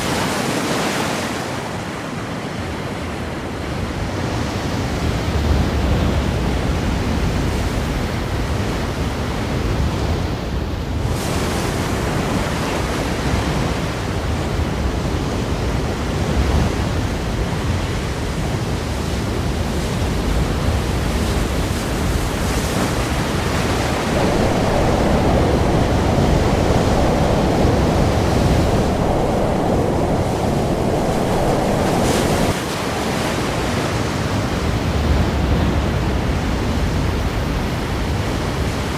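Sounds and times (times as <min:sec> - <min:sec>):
waves breaking on rocks: 0:00.0 - 0:02.2, 0:20.6 - 0:35.4.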